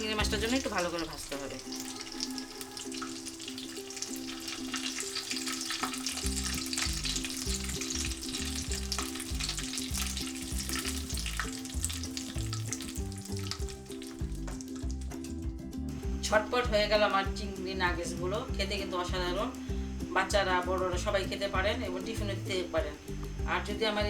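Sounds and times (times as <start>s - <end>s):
food sizzling in hot oil: 0.0s - 24.0s.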